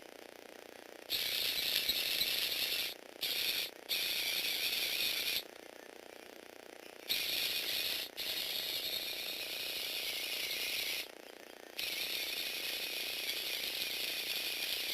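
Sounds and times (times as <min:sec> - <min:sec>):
small electric motor driving gears: 0:01.0 - 0:05.5, 0:07.0 - 0:14.9.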